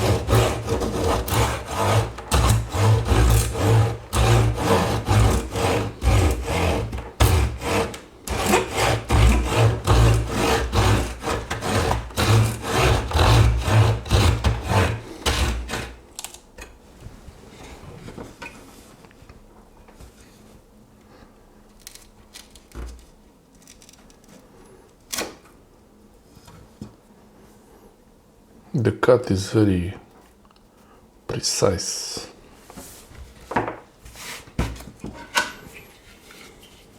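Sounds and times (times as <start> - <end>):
saw cutting tree branch: 0.0 - 16.0.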